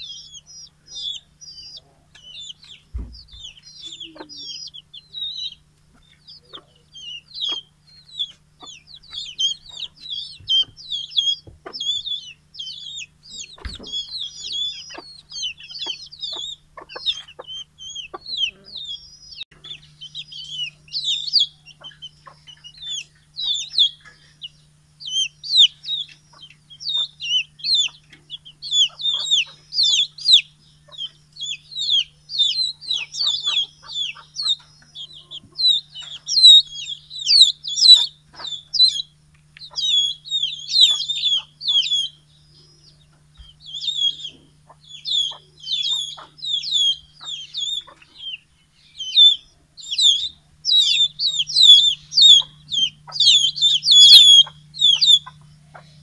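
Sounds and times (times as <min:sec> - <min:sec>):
chickens peeping and clucking: 0:00.0 - 0:56.0
thump: 0:02.9 - 0:03.5.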